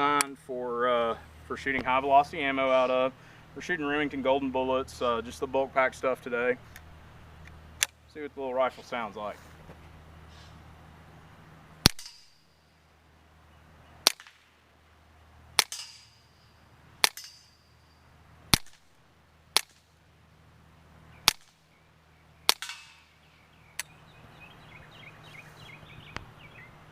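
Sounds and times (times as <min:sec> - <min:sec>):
suppressed rifle shots: 0:11.8 - 0:12.4, 0:14.0 - 0:14.5, 0:15.6 - 0:16.2, 0:18.5 - 0:18.9, 0:22.5 - 0:23.2.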